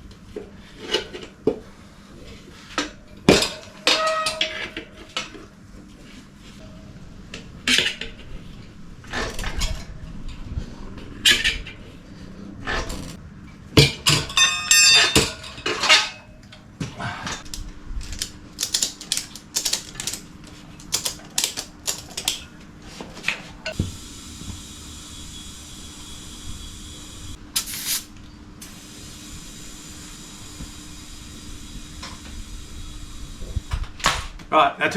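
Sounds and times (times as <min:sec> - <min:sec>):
air hissing into tyre: 0:23.7 - 0:33.7.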